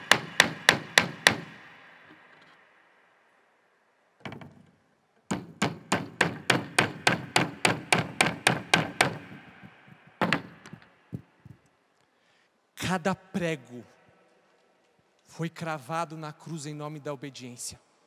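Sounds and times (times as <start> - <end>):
hammer striking nail into wood: 0.0 - 1.6, 5.3 - 11.3.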